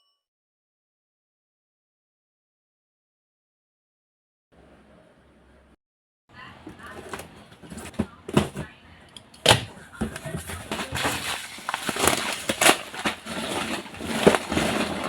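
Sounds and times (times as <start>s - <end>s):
packaging rustling and crinkling: 9.9s - 15.0s.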